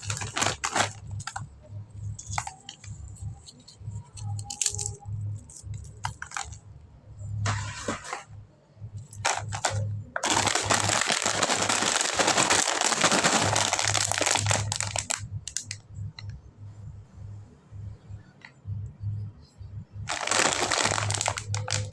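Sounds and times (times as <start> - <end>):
plastic packaging crinkling: 0.0 - 6.6, 7.4 - 8.3, 9.0 - 15.8, 20.1 - 21.9.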